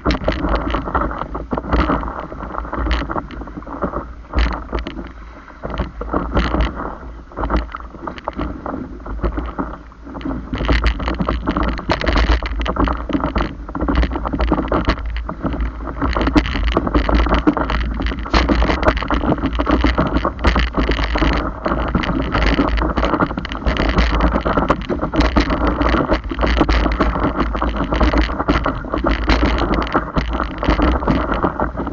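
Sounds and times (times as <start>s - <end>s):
wind buffeting microphone: 0.0s - 31.9s.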